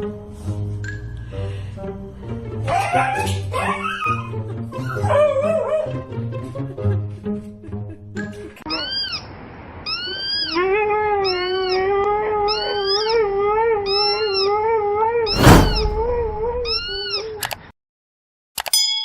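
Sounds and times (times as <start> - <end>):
rising and falling animal calls: 8.7 - 14.6
animal howling: 9.9 - 17.4.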